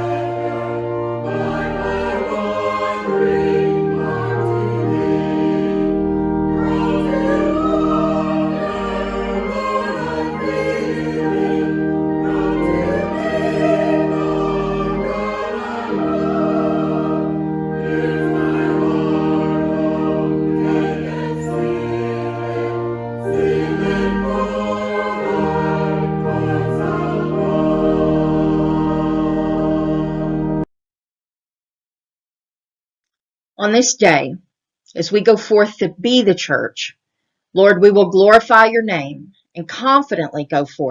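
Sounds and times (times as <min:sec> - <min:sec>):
choir singing sacred music: 0:00.0 - 0:30.6
sustained instrumental chords: 0:00.0 - 0:30.6.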